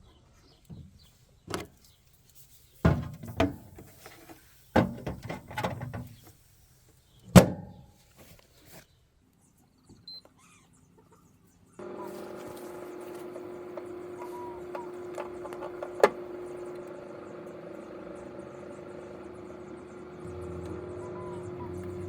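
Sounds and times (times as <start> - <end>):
microwave oven humming: 11.8 - 22.0.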